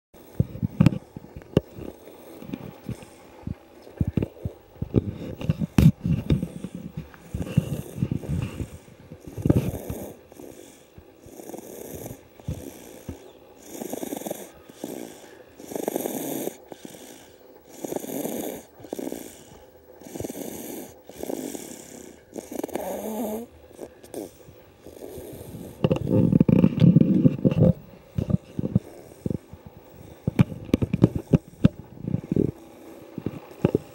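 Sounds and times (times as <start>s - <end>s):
person snoring: 4.0s - 30.4s.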